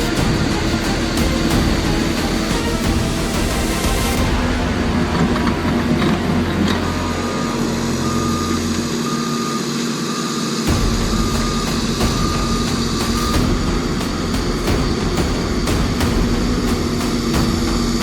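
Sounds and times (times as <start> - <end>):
backup alarm beeping: 5.1 - 13.6.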